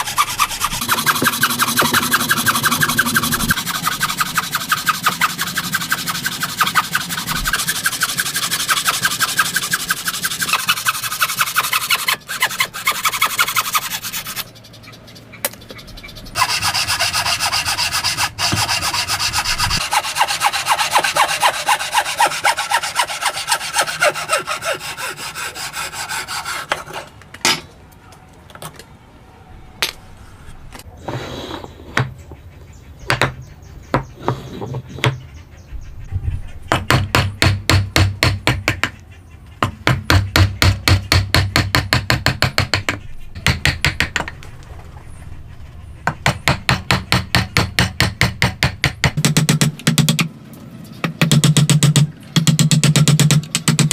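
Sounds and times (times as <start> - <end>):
hand saw cutting wood: 0.0 - 15.0, 15.8 - 27.1.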